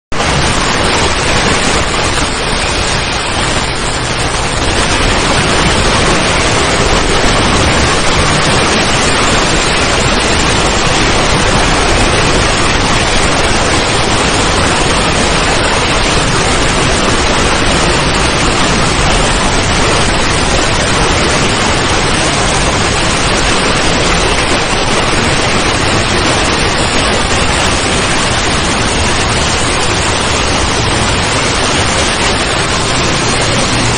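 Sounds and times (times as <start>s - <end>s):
loud static hiss: 0.0s - 33.9s.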